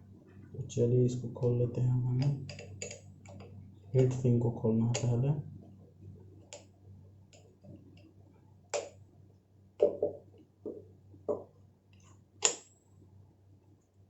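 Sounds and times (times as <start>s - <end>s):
faint low hum: 0.0s - 14.0s.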